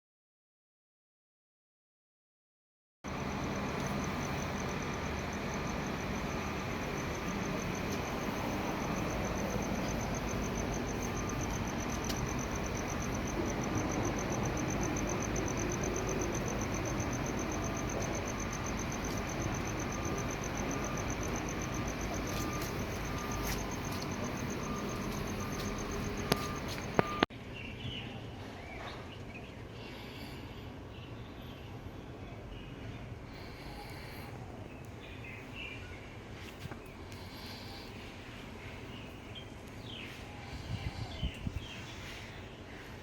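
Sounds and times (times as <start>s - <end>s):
steady background noise: 3.1s - 43.0s
voltage detector beeping: 3.2s - 27.2s.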